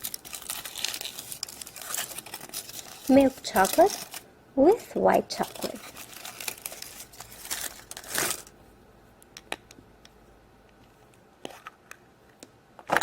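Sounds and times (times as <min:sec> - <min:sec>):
foil wrapper crinkling and tearing: 0:00.0 - 0:04.2, 0:05.4 - 0:08.5.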